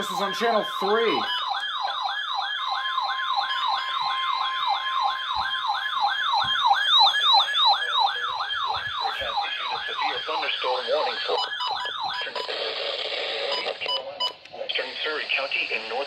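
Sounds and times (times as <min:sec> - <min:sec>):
steady high alert tone: 0:00.0 - 0:01.5
electronic siren sweep: 0:00.0 - 0:12.3.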